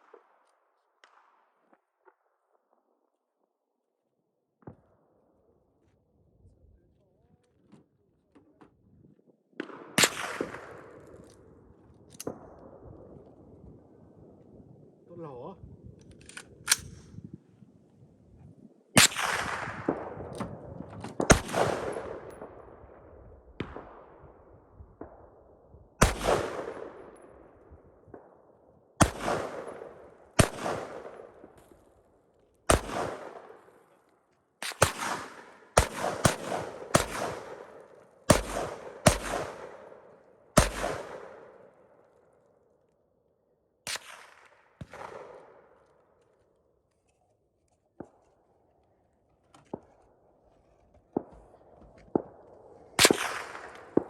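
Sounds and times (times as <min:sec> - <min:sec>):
rifle shots with echo: 0:09.6 - 0:14.6, 0:18.9 - 0:42.2, 0:43.8 - 0:46.0, 0:49.6 - 0:54.0.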